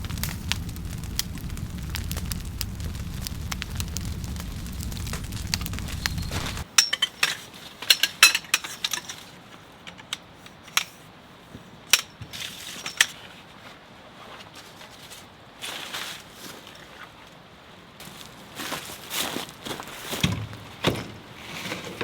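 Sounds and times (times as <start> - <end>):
sharp clicks and clinks: 6.5 - 9.2.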